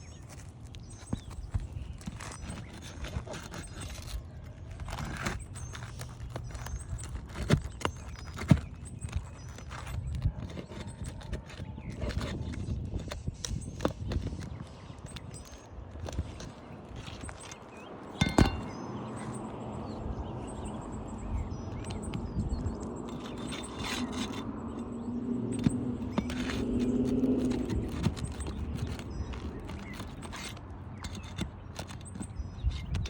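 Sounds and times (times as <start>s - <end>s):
pry tool scraping shingles: 0.1s - 19.4s, 21.6s - 33.0s
nails tearing through shingles: 1.1s - 18.8s, 23.0s - 33.0s.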